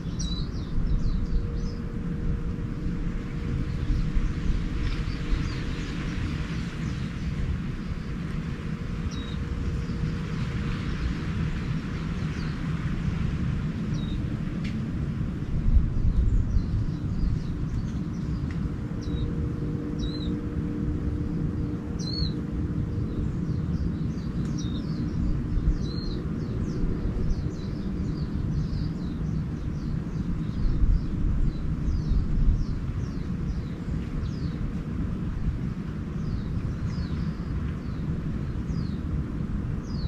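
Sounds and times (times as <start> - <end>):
small birds chirping: 0.0 - 14.8, 15.5 - 40.0
faint steady hum: 0.0 - 40.0
steady low rumble: 0.0 - 40.0.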